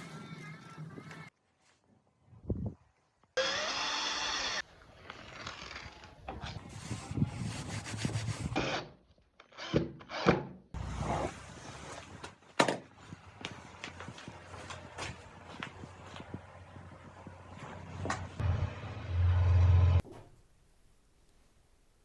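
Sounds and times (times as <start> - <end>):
power tool whine: 3.4 - 4.6.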